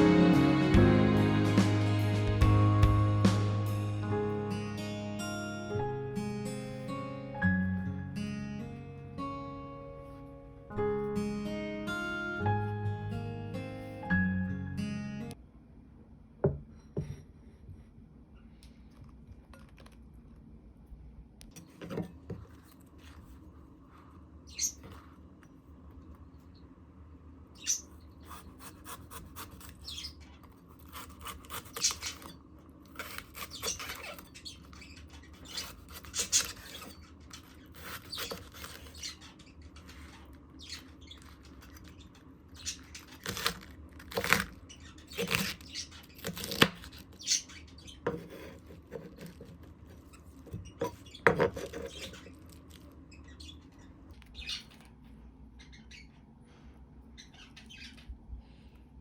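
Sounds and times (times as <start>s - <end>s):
utensil squeaks: 24.5s - 25.1s, 27.6s - 55.0s.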